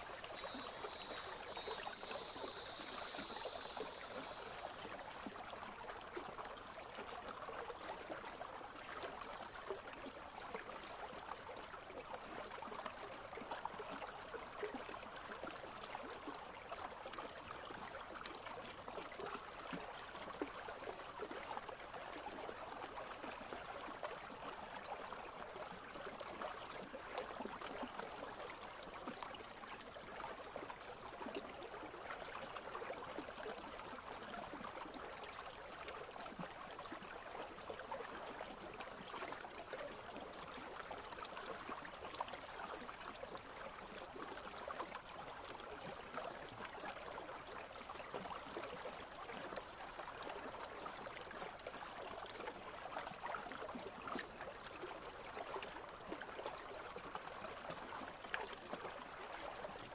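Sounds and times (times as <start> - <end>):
stream babbling over stones: 0.0 - 6.9.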